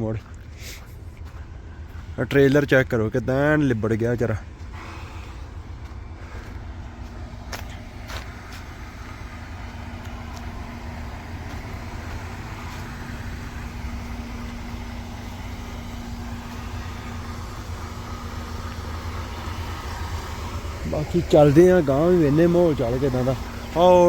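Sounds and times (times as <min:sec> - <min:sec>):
steady hum: 0:00.0 - 0:24.0
truck engine rumbling: 0:00.0 - 0:24.0.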